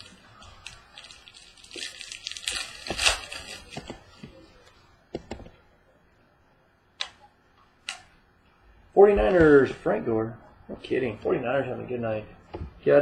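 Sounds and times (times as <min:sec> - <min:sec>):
plastic wrapping crinkling: 0:00.0 - 0:04.5.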